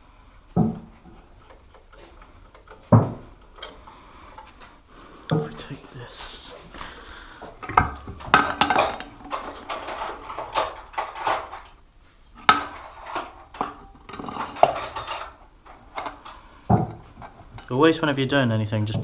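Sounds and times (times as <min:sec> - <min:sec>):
metal parts and tools clinking: 0:00.6 - 0:04.5, 0:07.4 - 0:11.8, 0:12.4 - 0:17.8.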